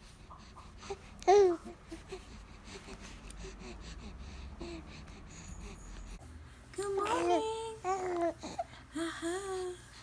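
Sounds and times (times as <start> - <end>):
infant babbling: 7.0 - 8.7.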